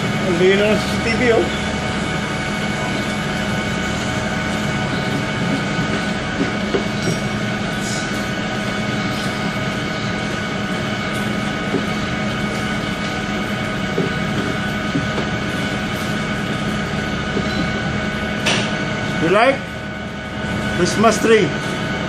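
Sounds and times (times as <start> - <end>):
heavy machinery rumbling: 0.0 - 22.0.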